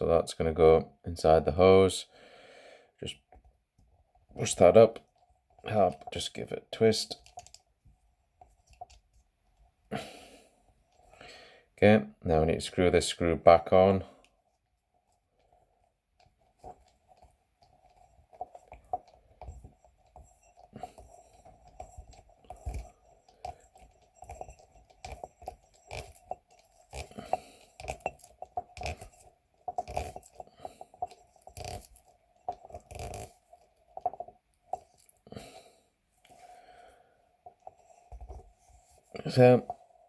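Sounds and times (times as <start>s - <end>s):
metal spring scraping on hose: 18.2s - 35.2s.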